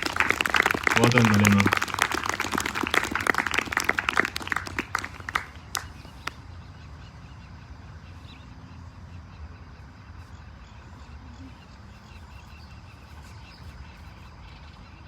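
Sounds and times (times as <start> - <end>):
audience applauding: 0.0 - 6.4.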